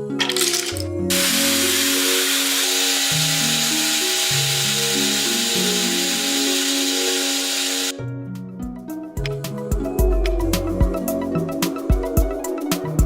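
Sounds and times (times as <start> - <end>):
background music: 0.0 - 13.0
power tool running: 0.3 - 7.9.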